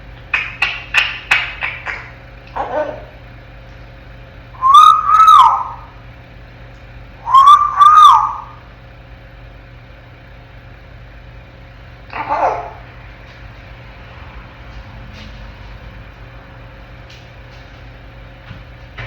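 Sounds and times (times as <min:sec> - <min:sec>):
parrot falling call: 0:04.6 - 0:06.0, 0:07.2 - 0:08.6, 0:12.1 - 0:12.9.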